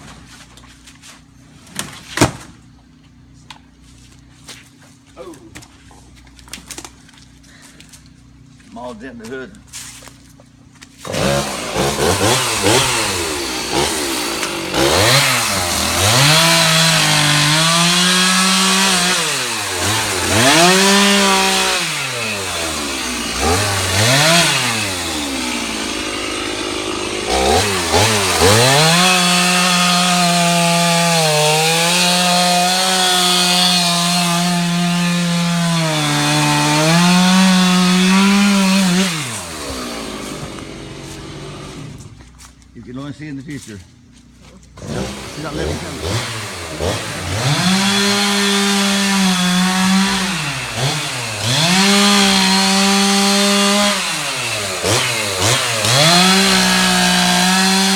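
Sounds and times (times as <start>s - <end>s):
chainsaw cutting wood: 10.9s - 42.4s, 44.5s - 57.9s.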